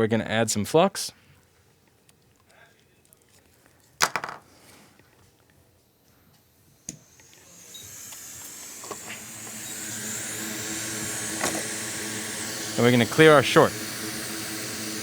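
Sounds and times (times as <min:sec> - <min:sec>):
fan blowing with rushing hiss: 0:05.6 - 0:15.0.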